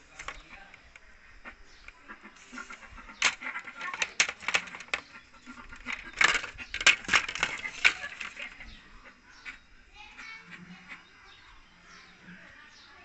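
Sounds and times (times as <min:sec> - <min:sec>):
small hard objects clattering: 0:00.0 - 0:00.8, 0:02.4 - 0:08.7.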